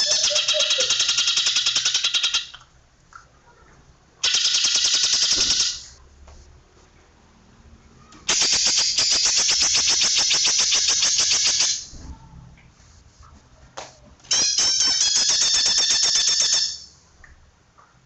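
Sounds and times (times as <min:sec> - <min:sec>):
bird rapid rattling song: 0:00.0 - 0:02.6, 0:04.2 - 0:06.0, 0:08.3 - 0:11.9, 0:14.3 - 0:16.9.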